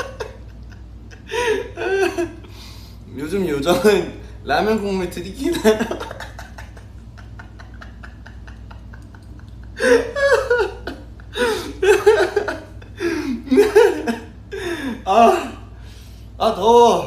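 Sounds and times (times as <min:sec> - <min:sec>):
man laughing hard: 0:00.0 - 0:02.5, 0:05.5 - 0:15.6.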